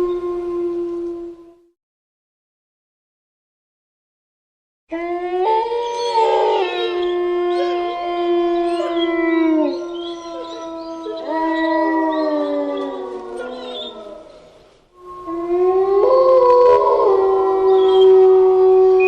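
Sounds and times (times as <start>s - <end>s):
wolves howling: 4.9s - 19.0s.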